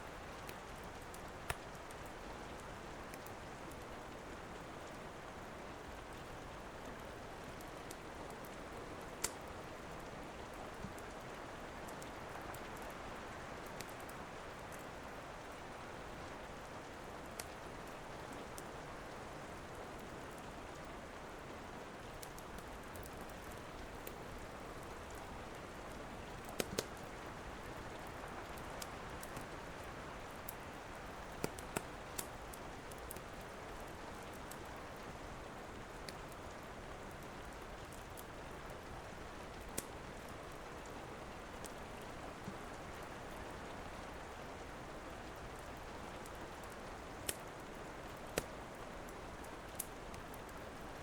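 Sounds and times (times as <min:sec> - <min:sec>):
fireplace crackling and popping: 0:00.0 - 0:51.0
steady rain hiss: 0:00.0 - 0:51.0.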